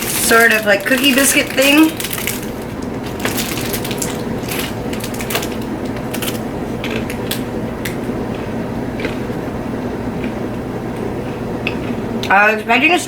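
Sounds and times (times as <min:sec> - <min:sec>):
crunching on a dry biscuit: 0:00.0 - 0:09.4.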